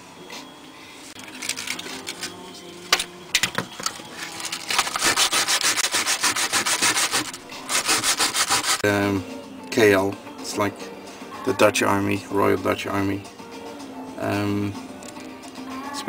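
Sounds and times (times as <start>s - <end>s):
hand sanding strokes: 4.8s - 8.8s.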